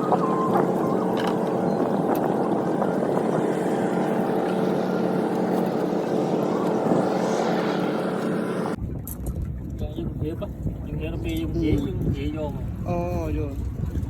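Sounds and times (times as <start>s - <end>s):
boat engine droning: 0.0s - 8.8s.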